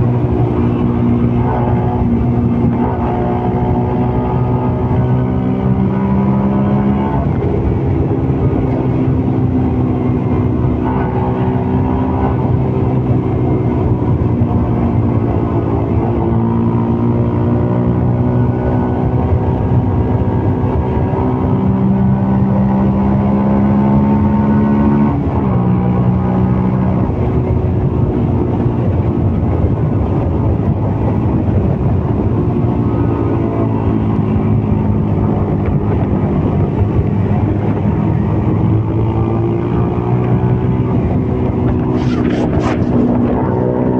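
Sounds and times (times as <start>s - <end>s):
motorbike engine revving with gear changes: 0.0s - 43.9s.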